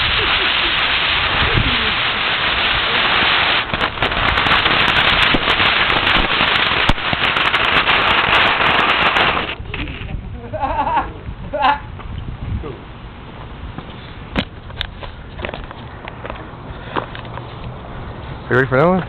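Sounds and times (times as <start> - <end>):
firework hissing: 0.0 - 10.1
firework crackling: 0.0 - 10.9.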